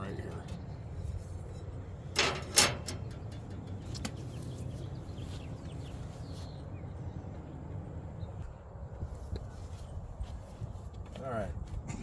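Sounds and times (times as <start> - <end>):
sheet metal scraping clatter: 1.1 - 4.0.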